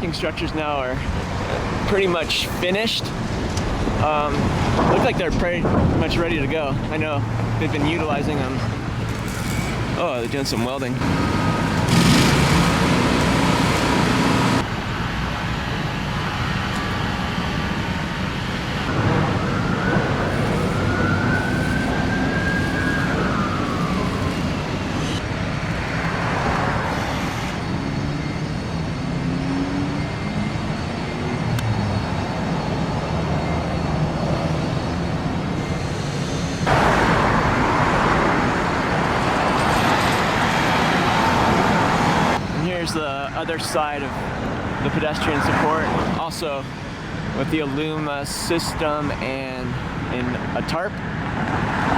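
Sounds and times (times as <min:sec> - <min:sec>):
road traffic noise: 0:00.0 - 0:51.9
faint siren wailing: 0:10.0 - 0:42.4.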